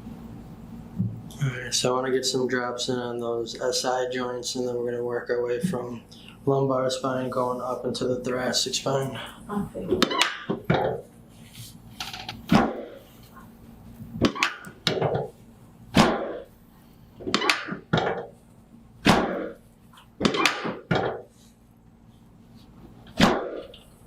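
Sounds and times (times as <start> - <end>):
drop table thunks: 9.9 - 11.1, 12.1 - 13.0, 14.2 - 15.3, 15.9 - 16.5, 17.2 - 18.4, 19.0 - 19.6, 20.2 - 21.3, 23.1 - 23.8.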